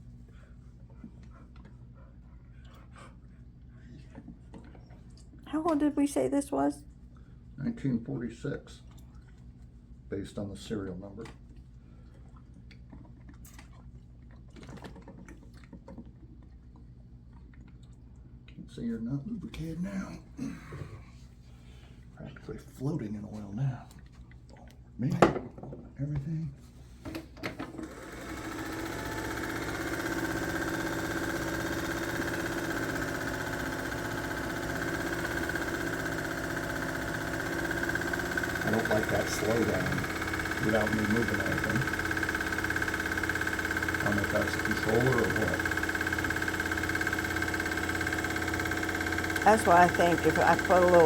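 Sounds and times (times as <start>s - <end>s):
sewing machine running: 27.6s - 51.0s.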